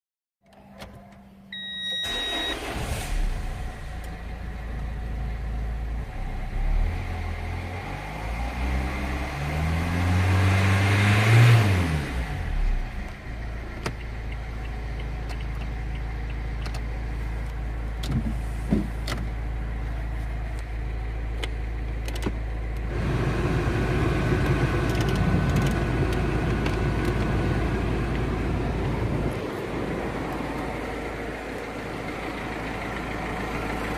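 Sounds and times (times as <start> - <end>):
diesel engine starting and idling: 0.6 - 33.9
engine revving: 6.0 - 13.0.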